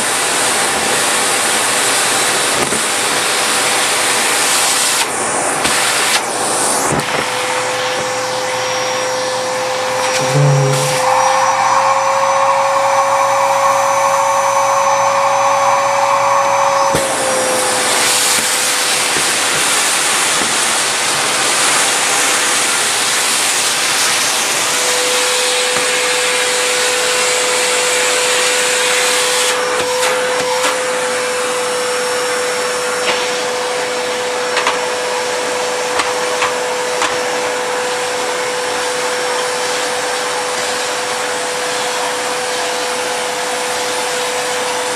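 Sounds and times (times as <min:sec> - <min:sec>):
vacuum cleaner running: 0:00.0 - 0:44.9.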